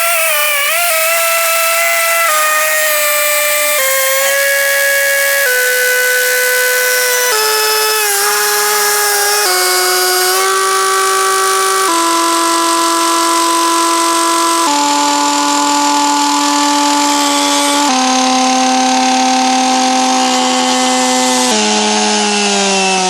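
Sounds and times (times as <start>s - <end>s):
cut-off saw cutting steel: 0.0s - 23.0s.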